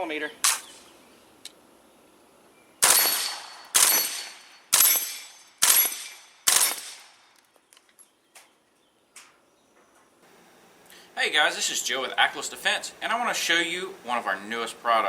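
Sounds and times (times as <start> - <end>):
suppressed gunshots: 2.8 - 7.2.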